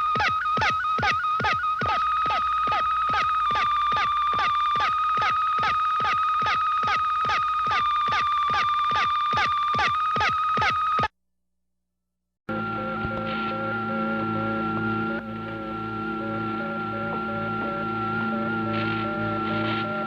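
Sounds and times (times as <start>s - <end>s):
falling electronic chirps: 0.0s - 11.1s, 12.5s - 20.0s
steady high electronic tone: 12.5s - 20.0s.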